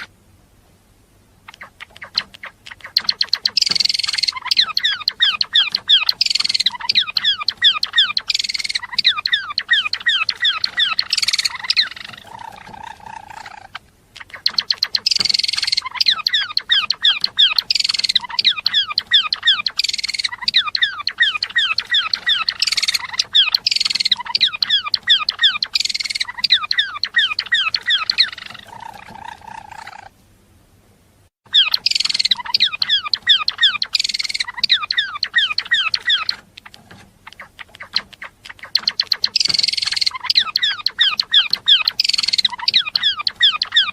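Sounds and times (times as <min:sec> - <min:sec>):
sparrow singing: 0:01.5 - 0:30.1, 0:31.5 - 0:43.9.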